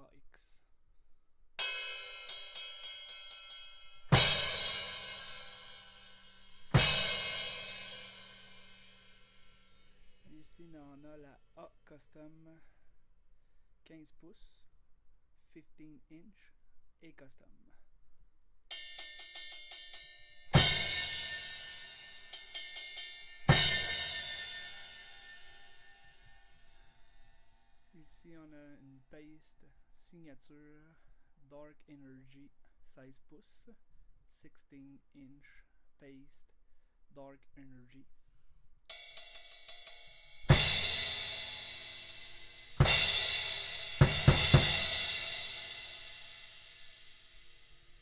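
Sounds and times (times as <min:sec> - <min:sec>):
crash cymbal ringing: 0:01.6 - 0:10.4, 0:18.7 - 0:27.7, 0:38.9 - 0:48.0.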